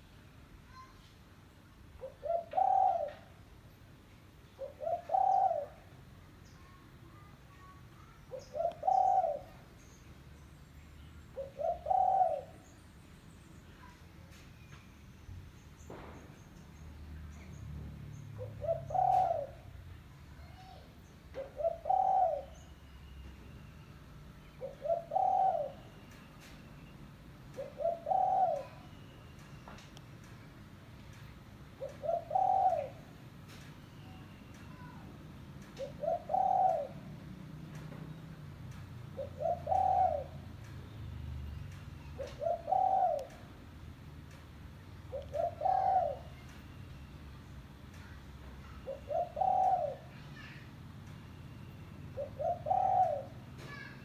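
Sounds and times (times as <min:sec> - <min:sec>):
dove cooing: 0:02.0 - 0:03.4, 0:04.6 - 0:05.9, 0:08.3 - 0:09.7, 0:11.4 - 0:12.7, 0:18.3 - 0:19.8, 0:20.4 - 0:22.7, 0:24.6 - 0:26.0, 0:27.5 - 0:29.0, 0:31.7 - 0:33.3, 0:35.7 - 0:37.3, 0:39.0 - 0:40.7, 0:42.0 - 0:43.8, 0:45.0 - 0:46.7, 0:48.0 - 0:50.7, 0:52.0 - 0:54.0.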